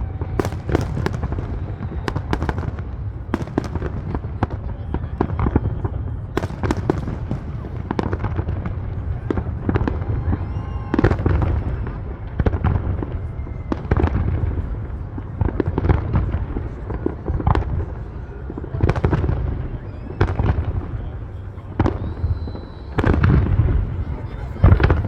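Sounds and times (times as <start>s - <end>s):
high firework whistle: 9.4s - 11.9s, 19.5s - 25.0s.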